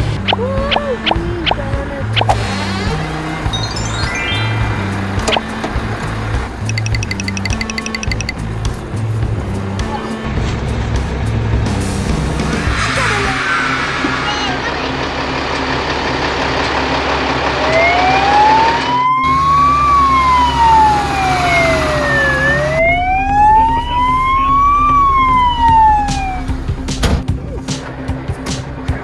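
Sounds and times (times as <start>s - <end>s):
engine rumble: 0.0s - 29.0s
fire engine siren wailing: 12.5s - 26.9s.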